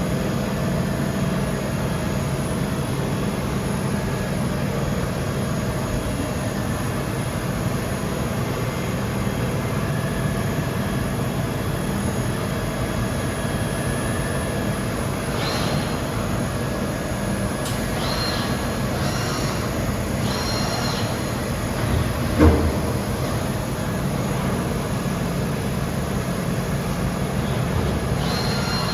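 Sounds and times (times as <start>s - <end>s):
machine humming: 0.0s - 28.9s
high-pitched squeals: 17.9s - 21.4s, 28.2s - 28.9s.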